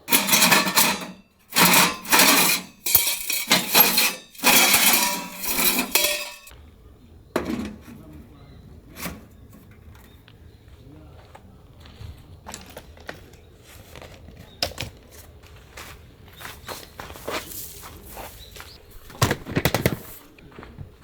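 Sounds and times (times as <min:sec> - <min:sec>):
metal gear clattering: 0:00.0 - 0:06.5.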